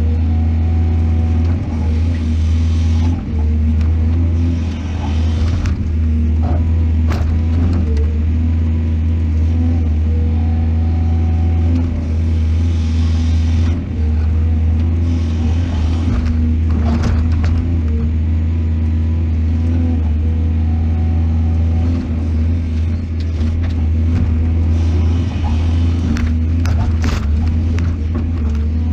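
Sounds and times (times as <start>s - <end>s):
excavator diesel engine running: 0.0s - 28.9s.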